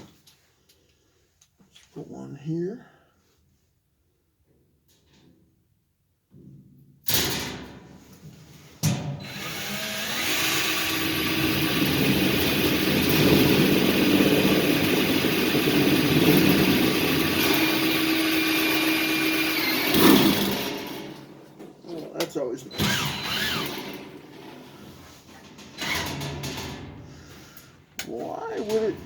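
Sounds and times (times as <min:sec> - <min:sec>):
power drill driving a screw: 0:09.2 - 0:21.2, 0:22.7 - 0:24.3, 0:25.8 - 0:26.5.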